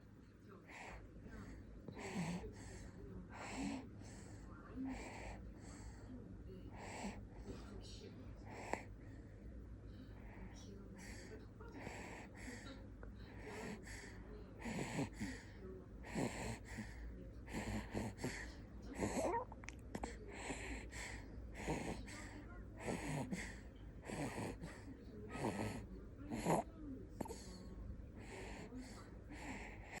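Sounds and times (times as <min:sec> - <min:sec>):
baby snoring: 0:14.6 - 0:15.4, 0:16.0 - 0:18.4, 0:19.0 - 0:27.5.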